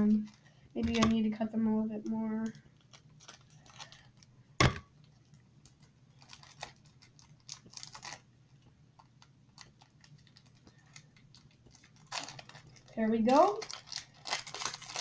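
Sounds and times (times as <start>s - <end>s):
packaging crinkling: 0.0s - 1.1s, 2.4s - 4.3s, 4.9s - 15.0s.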